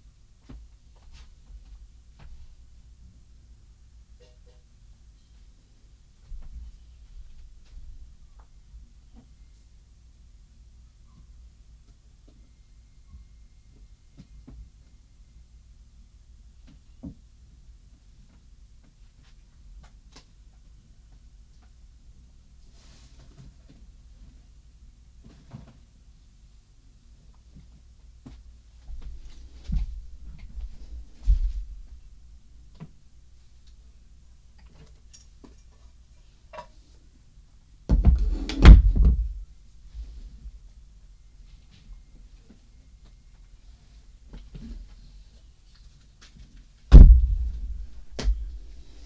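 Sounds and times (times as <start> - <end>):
low steady hum: 37.8 - 41.4, 46.9 - 49.0
soft knocks: 37.9 - 39.4, 46.9 - 48.8
loud clattering bang: 38.0 - 39.4, 46.9 - 48.9.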